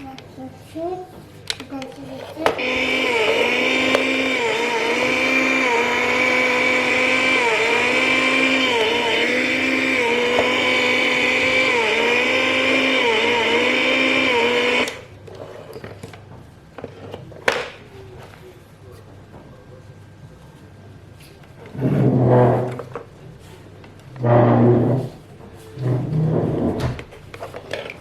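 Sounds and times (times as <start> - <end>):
toy chainsaw buzzing engine effect: 2.6 - 15.1.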